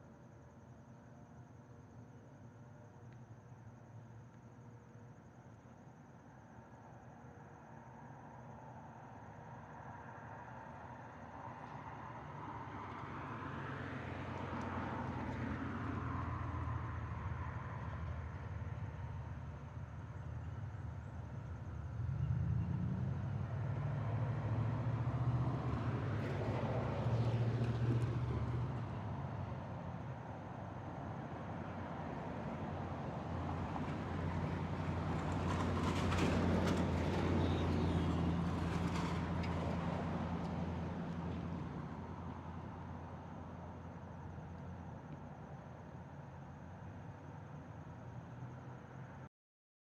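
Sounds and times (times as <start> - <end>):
vehicle passing by: 21.7 - 29.9, 31.4 - 43.2.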